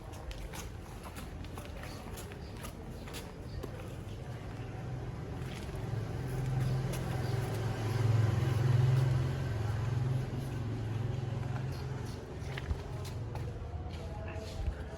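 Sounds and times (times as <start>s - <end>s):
vehicle engine passing by: 4.8s - 12.4s.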